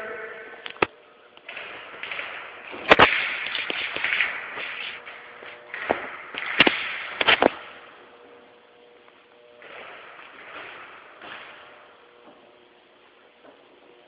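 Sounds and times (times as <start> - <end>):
noisy background: 0.0 - 14.0
airsoft guns firing: 1.4 - 8.1.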